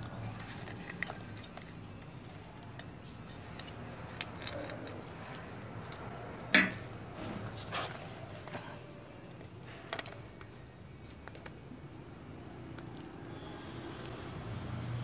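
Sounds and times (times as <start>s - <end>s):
quiet handling noises: 0.0s - 11.9s.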